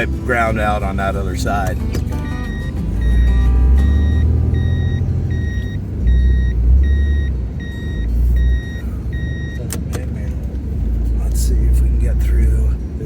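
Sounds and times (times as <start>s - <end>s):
diesel engine low rumble: 0.0s - 13.0s
reverse warning beeping: 0.8s - 9.8s.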